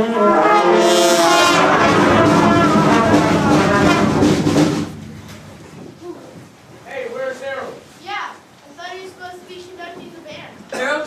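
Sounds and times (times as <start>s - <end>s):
loud brass-like held chord: 0.0s - 5.5s.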